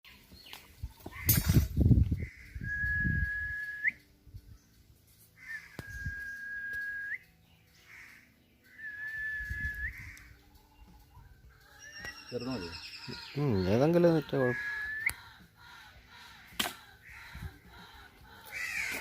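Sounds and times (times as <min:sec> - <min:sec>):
long whistled notes: 0:02.6 - 0:04.0, 0:05.5 - 0:07.3, 0:08.7 - 0:10.0.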